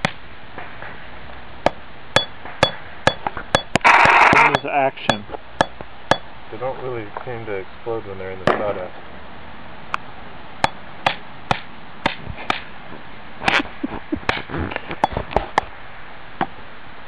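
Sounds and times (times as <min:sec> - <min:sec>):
snap pops cracking: 0:02.4 - 0:06.3, 0:10.6 - 0:12.7.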